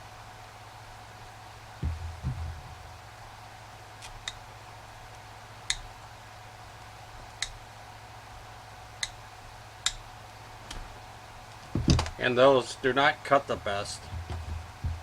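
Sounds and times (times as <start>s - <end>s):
low steady hum: 0.0s - 15.0s
handling bumps: 1.8s - 3.1s, 11.6s - 12.2s, 13.4s - 15.0s.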